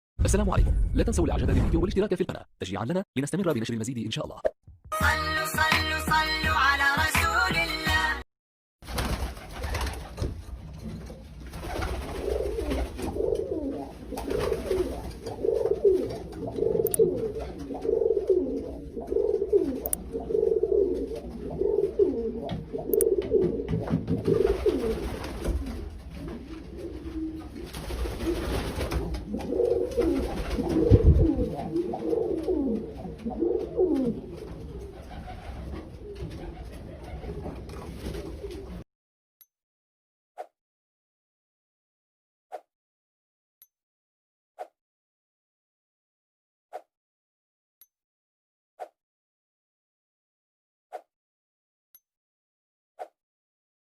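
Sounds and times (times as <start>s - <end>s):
pigeons cooing: 12.1s - 38.8s.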